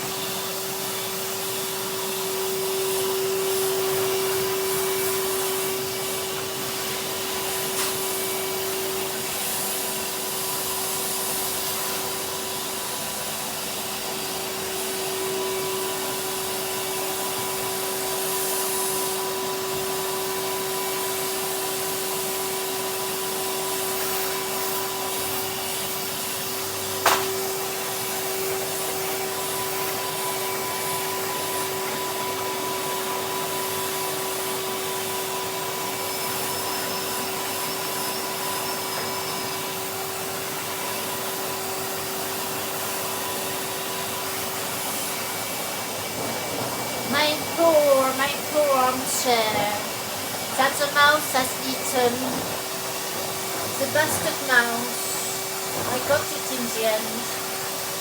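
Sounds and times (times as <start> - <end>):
vacuum cleaner running: 0.0 - 58.0
sharp knock: 27.0 - 27.3.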